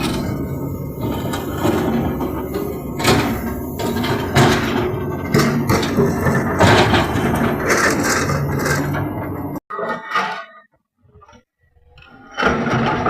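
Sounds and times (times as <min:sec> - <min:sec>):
diesel engine running: 0:00.0 - 0:09.6
metal knocks and clanks: 0:00.0 - 0:10.6.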